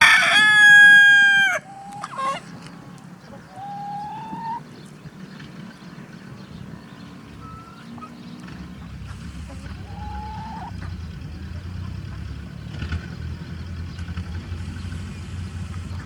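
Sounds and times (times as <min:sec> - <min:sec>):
rooster crowing: 0:00.0 - 0:02.4, 0:09.7 - 0:10.8
chickens calling: 0:00.0 - 0:16.0.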